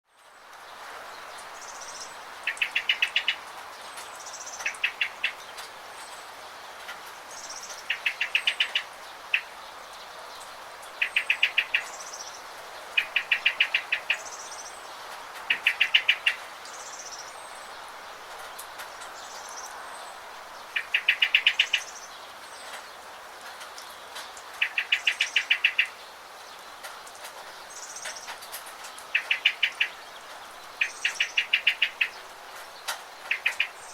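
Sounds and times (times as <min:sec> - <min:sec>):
steady background hiss: 0:00.1 - 0:33.9
bird trilling: 0:30.8 - 0:32.2, 0:33.3 - 0:33.9.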